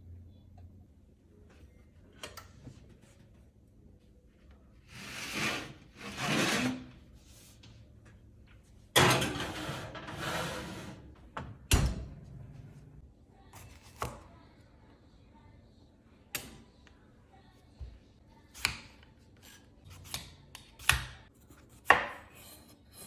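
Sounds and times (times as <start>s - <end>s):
sliding scrape: 5.0s - 6.9s, 9.1s - 11.0s.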